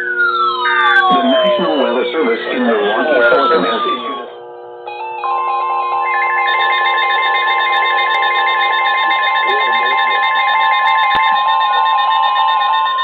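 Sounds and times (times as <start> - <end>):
steady warning alarm tone: 0.0 - 13.0
weather radios beeping alerts: 1.0 - 4.4, 8.2 - 11.9.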